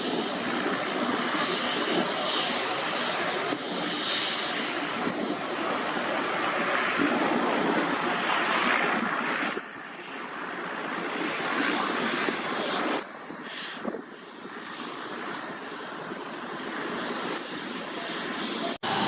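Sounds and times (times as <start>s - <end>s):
airliner cabin engine and air noise: 0.0s - 19.0s.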